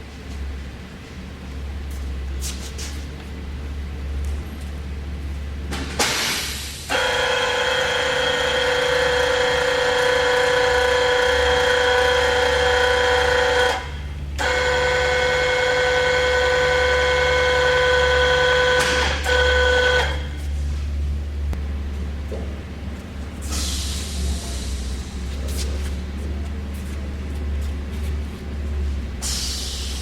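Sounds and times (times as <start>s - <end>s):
drill press whining: 6.9s - 20.4s.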